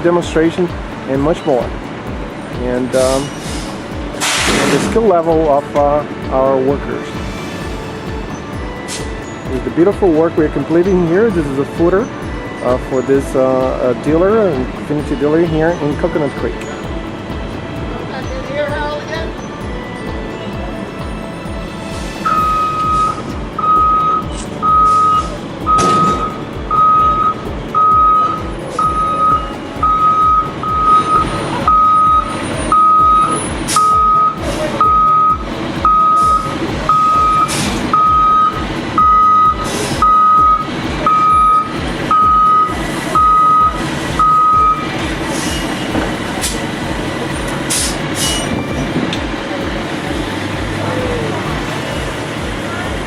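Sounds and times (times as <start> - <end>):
truck reversing alarm beeping: 0.0 - 5.7, 7.2 - 53.0
engine running: 0.0 - 53.0
metallic clanks: 3.2 - 5.9, 24.2 - 26.6.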